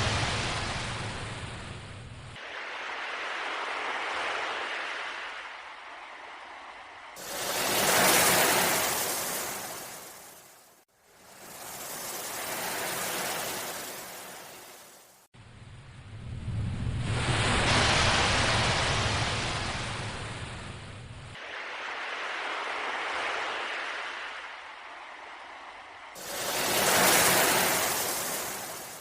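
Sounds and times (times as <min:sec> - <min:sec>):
ocean waves washing in: 0:00.0 - 0:29.0.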